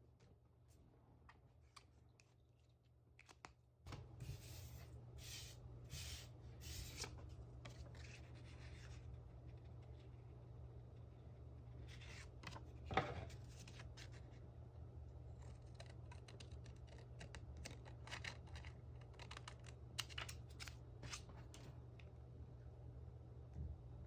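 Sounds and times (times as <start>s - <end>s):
scissors cutting paper: 15.4s - 21.2s.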